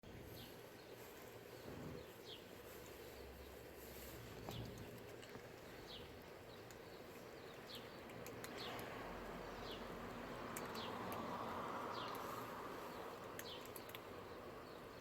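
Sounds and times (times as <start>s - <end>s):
small bird chirping: 0.2s - 15.0s.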